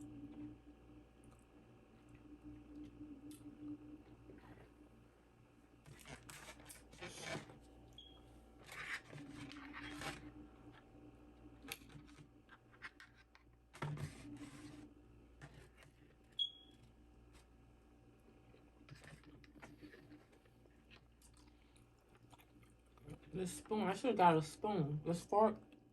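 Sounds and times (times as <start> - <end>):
food being handled and eaten: 11.6 - 14.7, 18.2 - 23.3.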